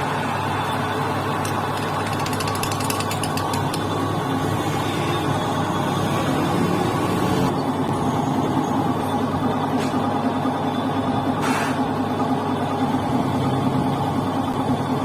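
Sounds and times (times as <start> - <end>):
metal lathe running: 0.0 - 7.5
fast rattle of sharp ticks: 1.4 - 4.1.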